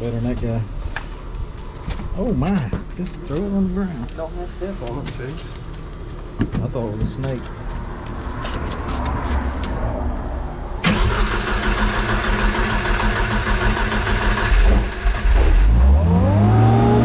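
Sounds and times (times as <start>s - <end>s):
engine starting and running: 10.8s - 17.0s.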